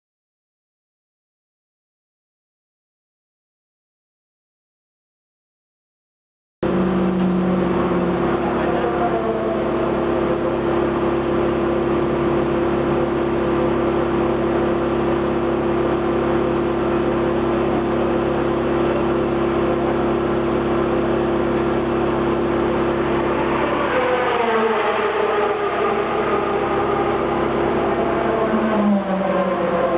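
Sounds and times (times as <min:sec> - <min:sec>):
high tone gliding down: 0:06.6 - 0:14.7, 0:19.4 - 0:29.9
race car engine at steady speed: 0:06.6 - 0:29.9.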